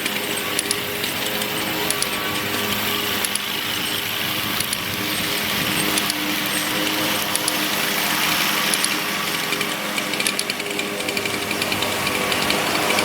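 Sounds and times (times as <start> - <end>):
chainsaw cutting through trunk: 0.0 - 13.0
scattered ticks: 0.0 - 13.0.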